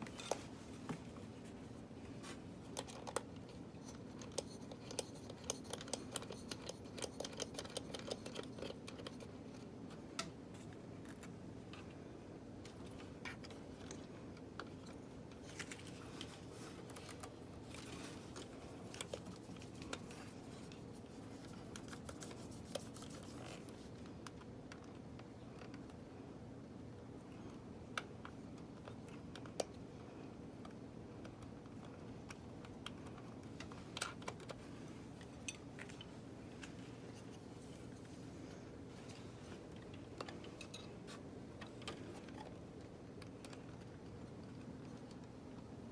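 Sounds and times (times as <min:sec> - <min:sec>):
small clicks and light scratching: 0:00.0 - 0:26.0, 0:27.3 - 0:45.9
steady low hum: 0:00.0 - 0:45.9.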